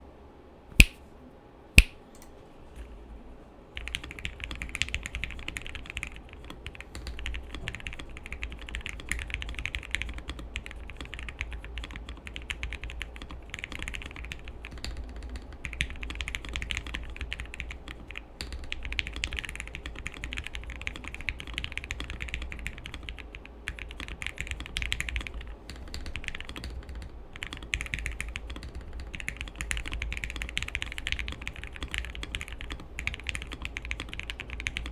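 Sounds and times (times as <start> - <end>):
sharp clicks: 0.8 - 1.0
typing on mechanical keyboard: 3.8 - 34.9.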